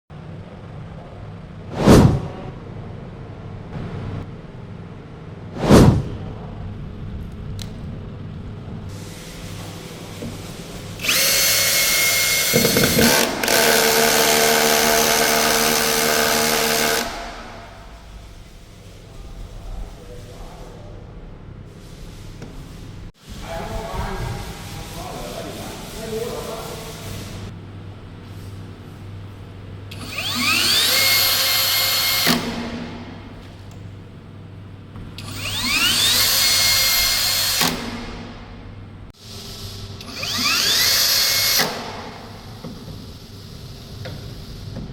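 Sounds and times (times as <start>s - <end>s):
hammer drill whining: 11.0s - 17.5s.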